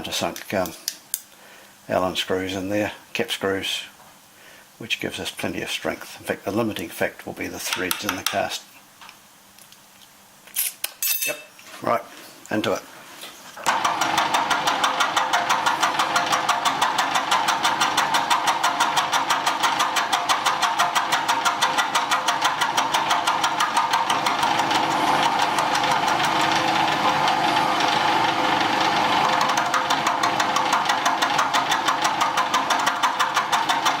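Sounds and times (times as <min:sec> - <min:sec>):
machine tool cutting metal: 0:13.7 - 0:34.0.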